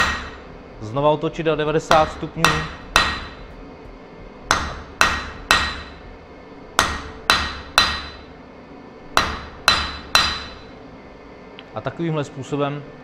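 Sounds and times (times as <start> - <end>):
hammer ringing on anvil: 0.0 - 0.4, 1.9 - 3.5, 4.5 - 6.0, 6.8 - 8.3, 9.2 - 10.7.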